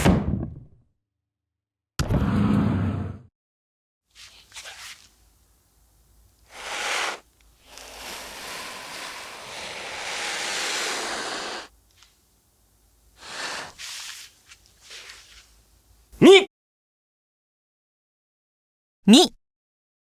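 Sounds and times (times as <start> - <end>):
brush stroke swishes: 6.5 - 11.7, 13.2 - 15.5.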